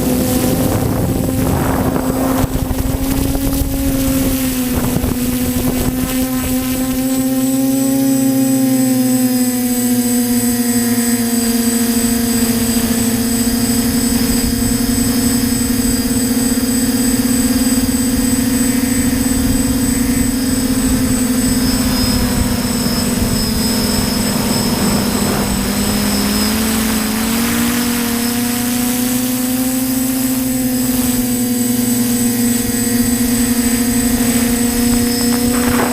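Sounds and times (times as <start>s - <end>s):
drone motors whining: 0.0s - 35.9s
rush of air: 0.5s - 4.1s.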